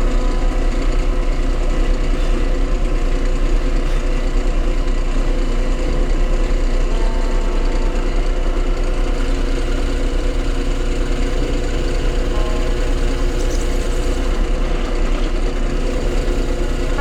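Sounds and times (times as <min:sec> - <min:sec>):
power tool motor running: 0:05.8 - 0:17.0.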